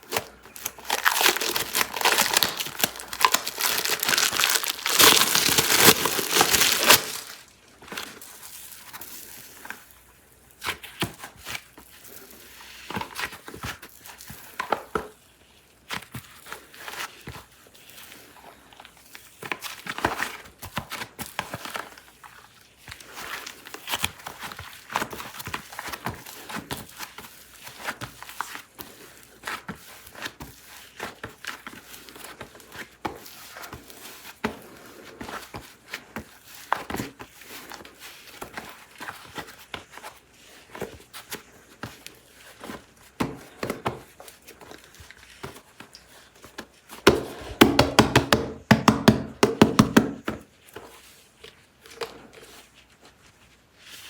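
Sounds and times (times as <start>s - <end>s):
plastic packaging crinkling and tearing: 0.0s - 9.8s.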